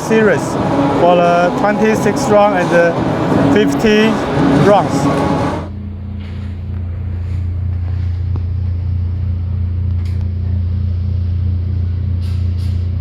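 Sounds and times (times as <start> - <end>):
loud low-pitched hum: 0.0 - 13.0.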